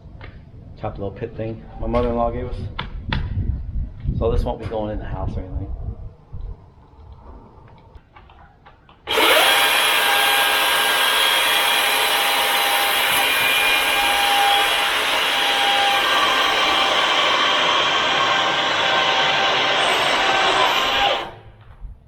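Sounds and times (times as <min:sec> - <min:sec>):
chainsaw cutting log: 0:09.1 - 0:21.4.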